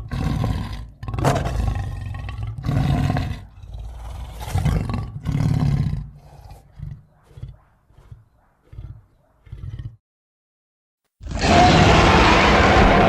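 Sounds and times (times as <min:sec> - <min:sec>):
monster roaring: 0:11.2 - 0:13.0.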